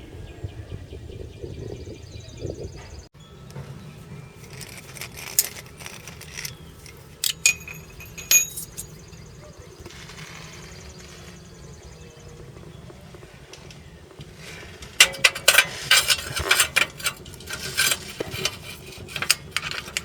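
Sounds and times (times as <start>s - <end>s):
metal clinking with ringing: 4.1s - 9.5s, 15.0s - 20.0s.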